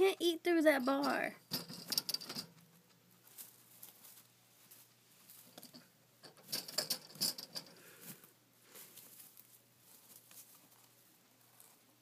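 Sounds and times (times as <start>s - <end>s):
guinea pig rattling cage bars: 0.8s - 2.6s, 5.6s - 7.8s.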